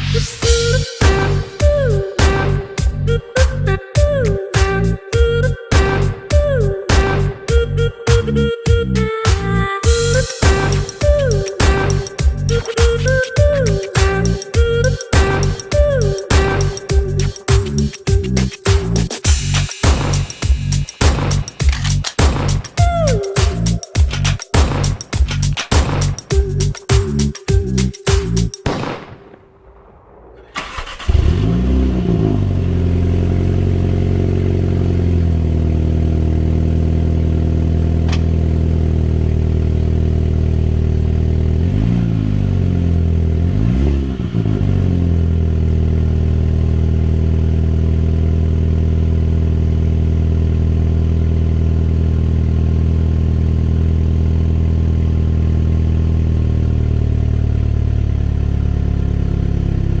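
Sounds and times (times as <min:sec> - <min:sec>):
car engine starting and idling: 0:00.0 - 0:29.1, 0:30.2 - 1:00.0
engine throttle blips: 0:30.4 - 0:35.6.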